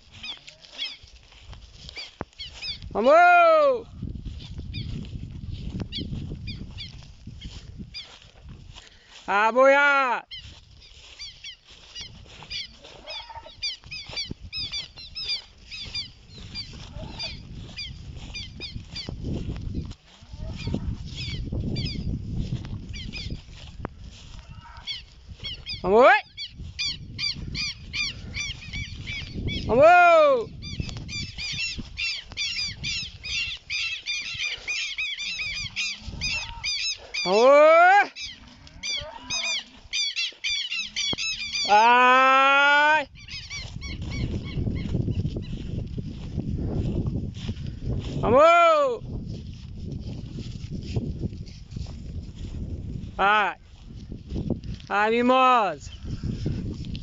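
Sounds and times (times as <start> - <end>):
bird making harsh calls: 11.2 - 19.1, 30.6 - 37.4, 38.1 - 41.8, 43.1 - 44.6.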